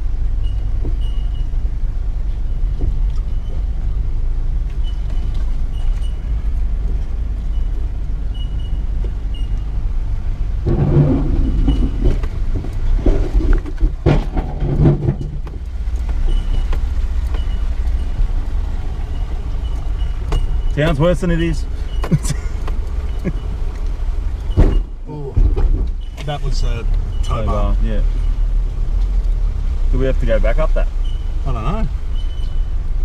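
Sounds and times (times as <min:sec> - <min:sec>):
engine low rumble: 0:00.0 - 0:33.0
scrapes and knocks from underneath: 0:10.6 - 0:17.6.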